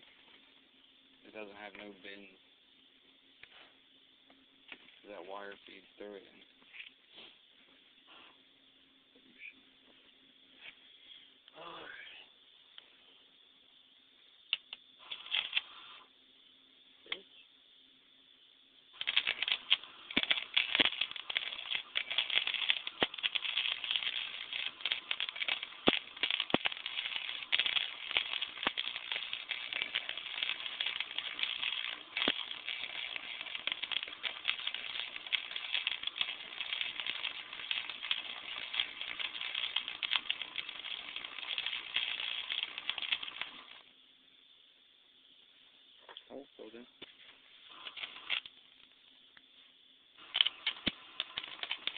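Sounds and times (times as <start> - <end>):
welder arc crackling and popping: 0.0 - 2.4, 3.4 - 7.3, 14.4 - 16.1, 18.9 - 43.9, 46.1 - 49.5, 50.1 - 51.9.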